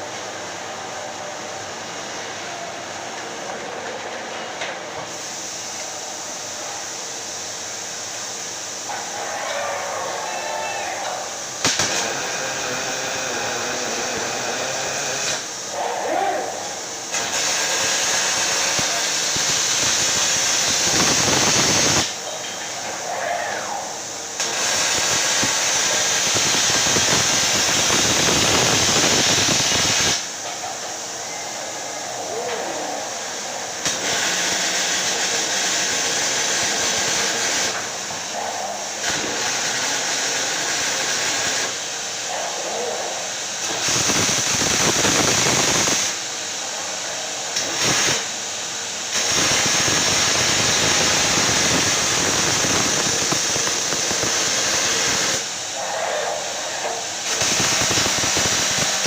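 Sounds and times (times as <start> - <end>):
welding arc hissing and crackling: 4.6 - 59.0.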